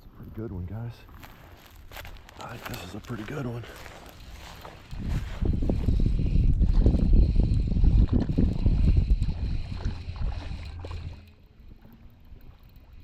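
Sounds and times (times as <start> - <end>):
wind gusting over microphone: 3.8 - 11.2.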